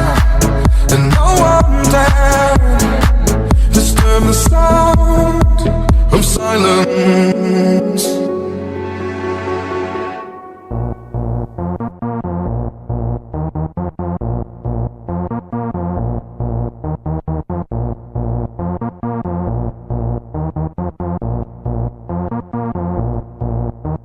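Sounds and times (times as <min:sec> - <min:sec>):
electronic dance music: 0:00.0 - 0:11.6.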